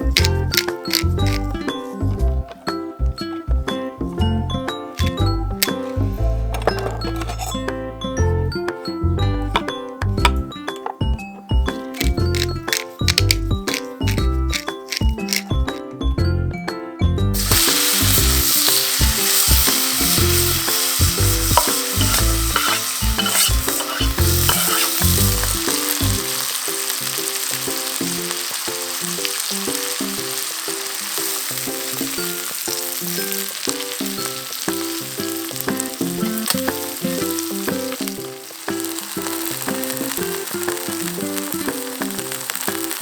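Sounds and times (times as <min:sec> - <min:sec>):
chicken sizzling in hot oil: 0:00.0 - 0:01.4, 0:17.4 - 0:43.0.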